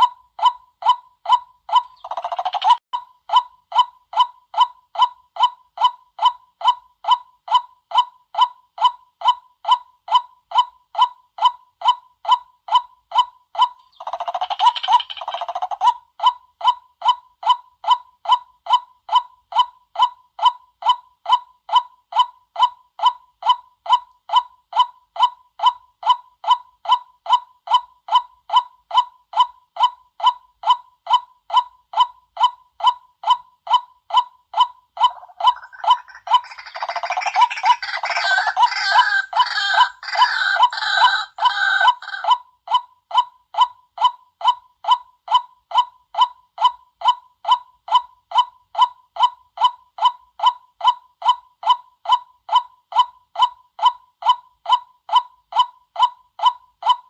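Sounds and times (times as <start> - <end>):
harsh rapid bird chattering: 1.7 - 2.8, 13.6 - 16.0, 35.0 - 42.3
waterhen kwak call: 35.0 - 42.4.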